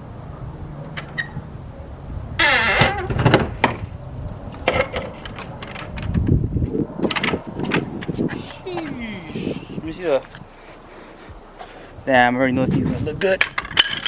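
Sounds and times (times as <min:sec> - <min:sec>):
loud creak: 0:02.4 - 0:03.8.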